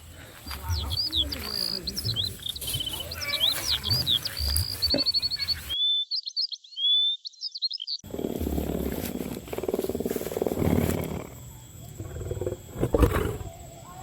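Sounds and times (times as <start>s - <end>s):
songbirds chirping and whistling: 0.0s - 14.0s
low pulsing growl: 8.1s - 13.6s.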